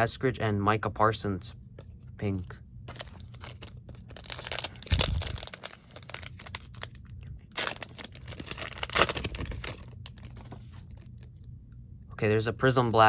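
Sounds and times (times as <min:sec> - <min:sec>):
foil pack crinkling and tearing: 0:02.9 - 0:11.4.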